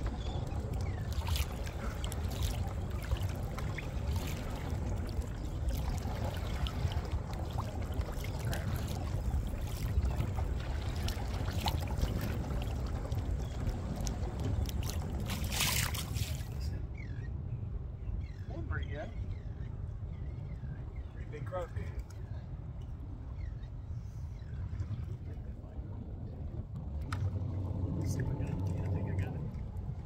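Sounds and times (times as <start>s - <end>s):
small splashes: 0.0s - 16.6s
waves lapping against kayak hull: 0.0s - 16.7s
low rumble: 0.0s - 18.5s, 22.2s - 30.0s.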